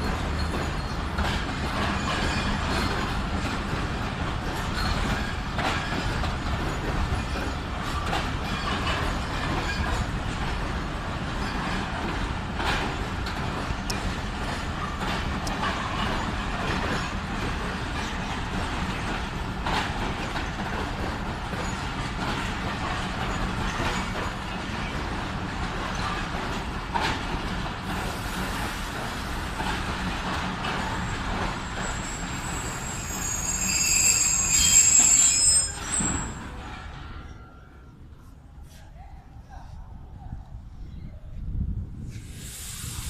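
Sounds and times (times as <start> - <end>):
wheels knocking on rails: 0.0 - 28.0
train rolling rumble: 0.0 - 43.0
high-pitched brake squeal: 4.6 - 5.5, 31.8 - 36.6.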